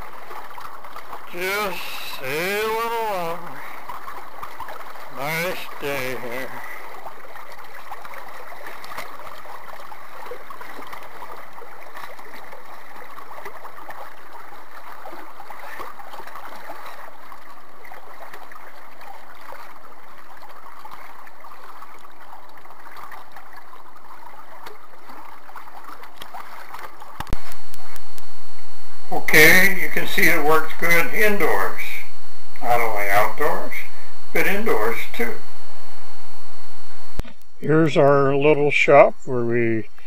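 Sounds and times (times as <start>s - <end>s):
water splashing along boat hull: 0.0s - 1.3s, 2.6s - 28.2s.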